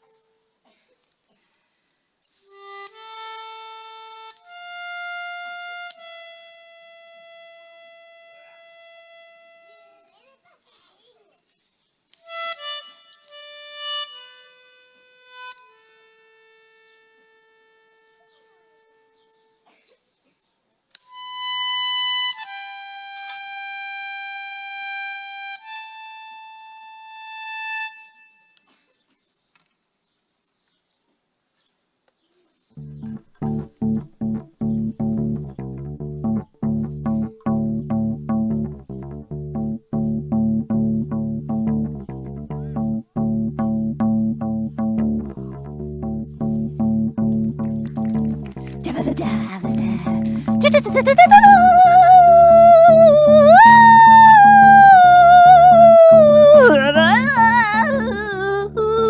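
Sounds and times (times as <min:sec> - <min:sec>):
wind instrument long notes: 0:32.8 - 0:59.0.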